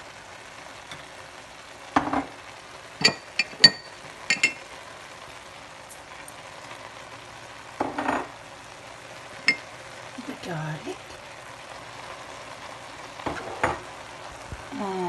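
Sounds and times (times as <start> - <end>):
food sizzling: 0.0 - 15.0
metal utensils clinking on pot: 3.0 - 4.6.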